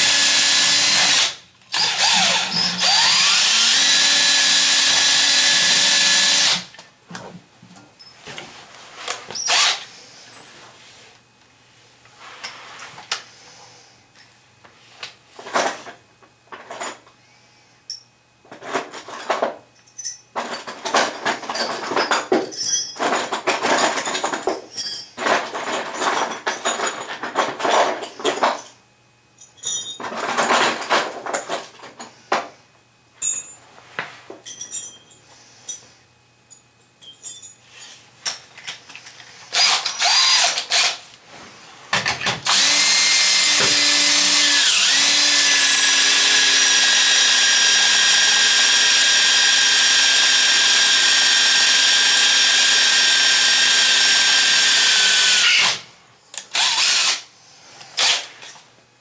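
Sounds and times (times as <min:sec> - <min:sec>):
metal clinks and clicks: 0:36.5 - 0:37.6.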